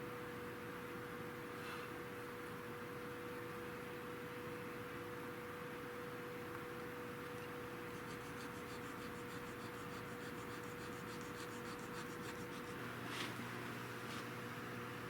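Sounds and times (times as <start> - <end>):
checkering tool scraping wood: 7.9 - 13.4.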